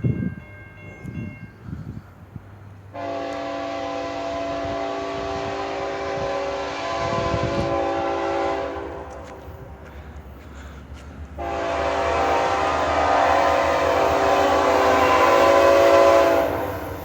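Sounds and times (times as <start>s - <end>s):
locomotive air horn chord: 2.9s - 9.4s, 11.4s - 17.0s.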